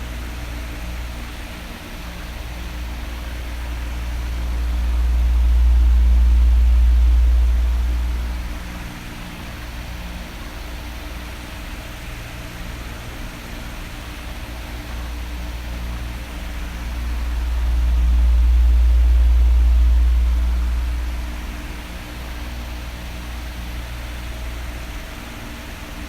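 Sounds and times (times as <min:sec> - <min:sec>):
faint fan motor hum: 0:00.0 - 0:26.0
fan air hiss: 0:00.0 - 0:26.0
air rumble on microphone: 0:02.1 - 0:10.8, 0:14.5 - 0:24.6.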